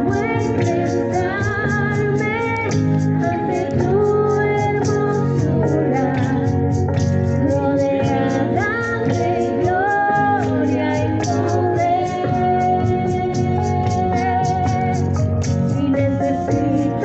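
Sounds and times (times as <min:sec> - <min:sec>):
guitar: 0:00.0 - 0:17.0
woman singing: 0:00.0 - 0:17.0.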